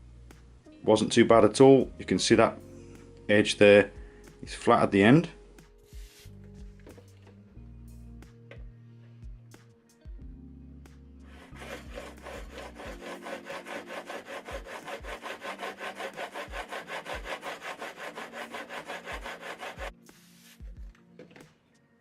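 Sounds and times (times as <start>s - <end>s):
chisel rubbing on sharpening plate: 11.3s - 19.9s.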